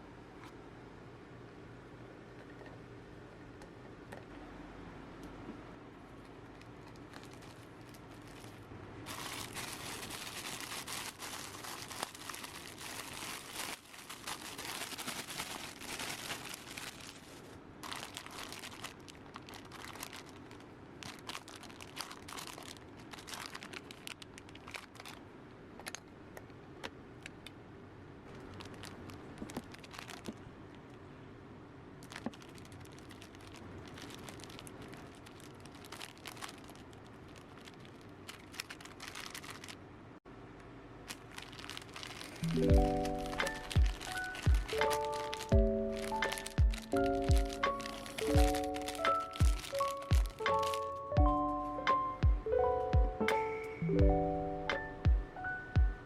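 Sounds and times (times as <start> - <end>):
packaging crinkling and rustling: 6.2 - 26.0, 28.2 - 31.0, 32.0 - 39.9, 41.0 - 51.1.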